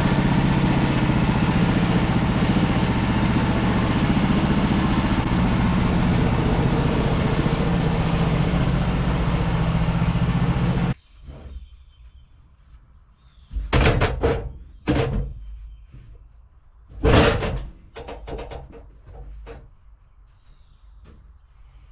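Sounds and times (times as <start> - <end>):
sawmill gasoline engine running: 0.0 - 11.0.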